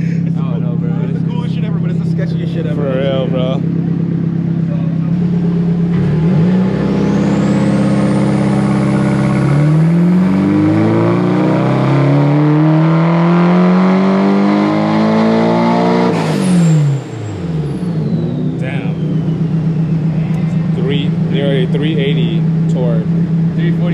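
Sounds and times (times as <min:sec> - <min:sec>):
car engine revving: 0:00.0 - 0:23.9
high turbo whistle: 0:06.2 - 0:11.3, 0:16.1 - 0:20.8.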